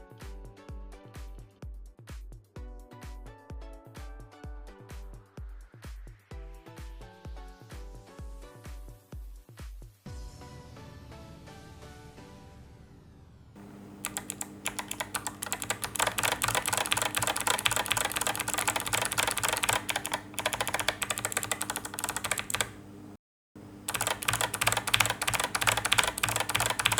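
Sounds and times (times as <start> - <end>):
fast keyboard typing: 13.6 - 23.1, 23.8 - 26.9.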